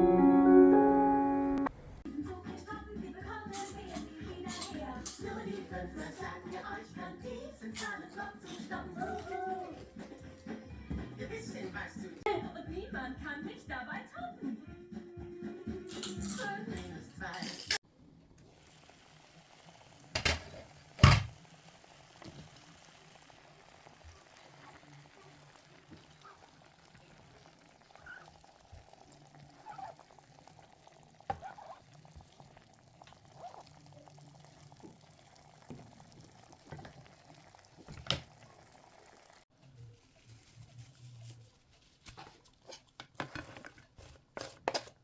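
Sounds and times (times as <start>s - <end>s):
light bubbling: 21.4s - 39.4s.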